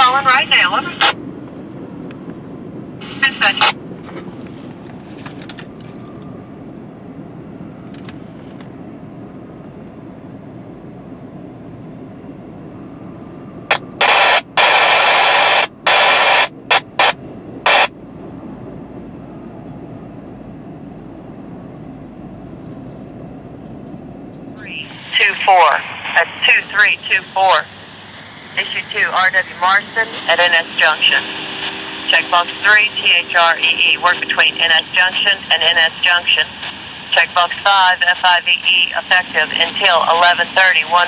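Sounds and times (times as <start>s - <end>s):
steady low rumble: 0.0s - 41.0s
radio static bursts: 24.6s - 41.0s.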